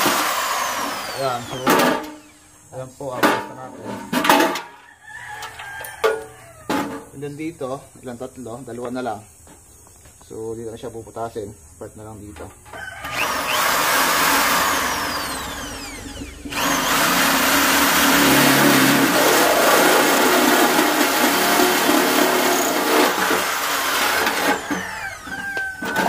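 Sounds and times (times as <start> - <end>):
drill hole saw cutting metal: 0.0 - 2.9, 12.7 - 26.0.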